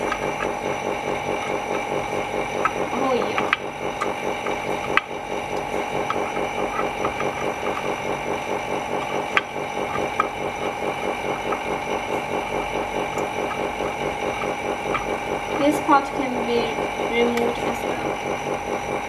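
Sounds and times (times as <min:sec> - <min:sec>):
laminating machine humming: 0:00.0 - 0:19.0.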